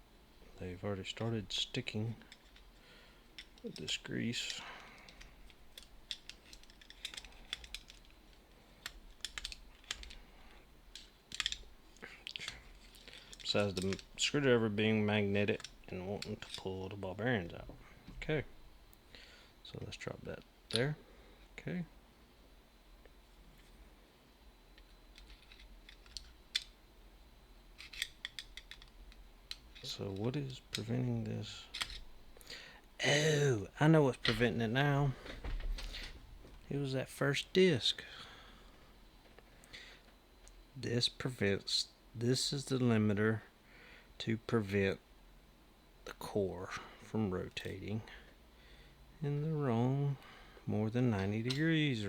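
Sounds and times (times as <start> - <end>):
small metallic clicks of padlock parts: 3.4 - 8.2, 8.8 - 10.2, 10.9 - 14.3, 15.4 - 16.7, 24.7 - 26.8, 27.8 - 30.9, 31.7 - 32.2.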